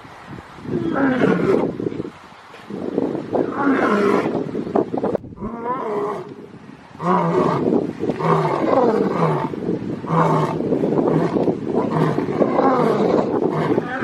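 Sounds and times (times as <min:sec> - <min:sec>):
lion roaring: 0:07.0 - 0:14.0.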